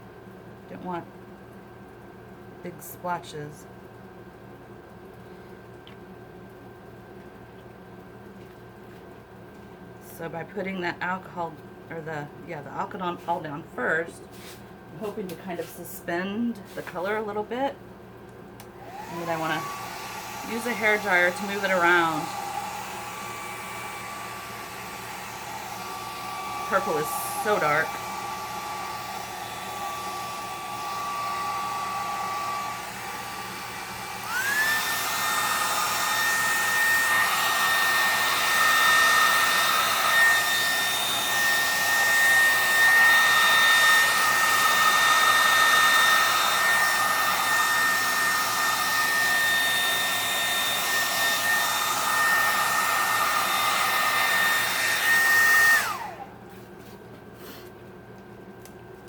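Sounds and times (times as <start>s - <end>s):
hair dryer running: 16.7s - 17.5s, 18.6s - 57.8s.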